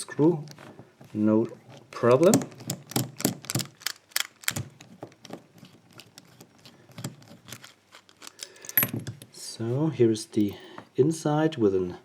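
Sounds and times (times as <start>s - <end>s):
padlock metal clicks and taps: 2.2s - 5.4s, 6.1s - 9.3s.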